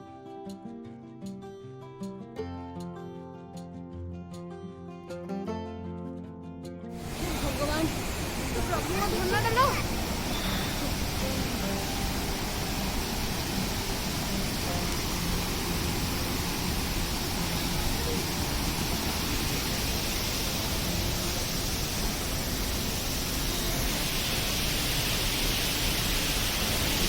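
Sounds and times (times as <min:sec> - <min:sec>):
waterfall roaring: 0:07.0 - 0:27.0.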